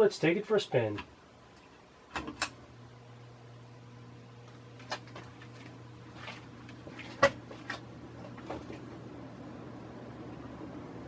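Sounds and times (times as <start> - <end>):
ceiling fan motor hum: 0.0 - 11.0
fan switch clicks: 2.1 - 2.6.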